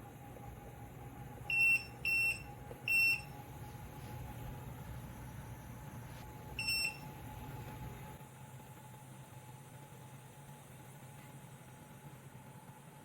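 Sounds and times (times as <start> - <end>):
steady low hum: 0.0 - 13.0
short electronic beeps: 1.5 - 3.3, 6.6 - 7.0.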